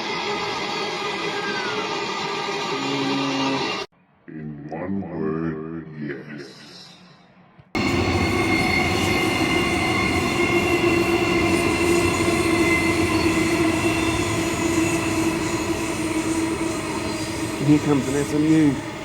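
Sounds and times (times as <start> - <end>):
electric train motor whine: 7.8 - 19.0
wheel squeal: 7.8 - 19.0
wheels on rail: 7.8 - 19.0.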